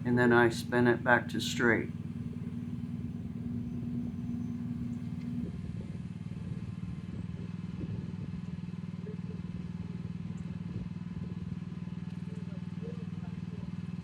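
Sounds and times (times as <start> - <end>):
excavator engine running: 0.0 - 5.4
hydraulic hum: 0.0 - 5.4.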